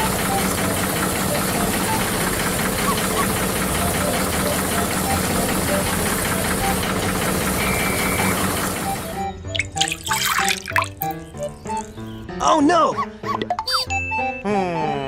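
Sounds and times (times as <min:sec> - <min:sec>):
small engine knocking: 0:00.0 - 0:09.3.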